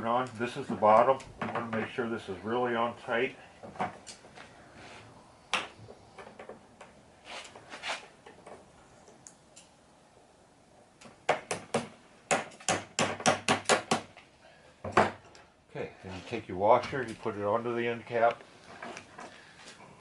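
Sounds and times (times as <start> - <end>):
sharp knocks: 11.3 - 14.1.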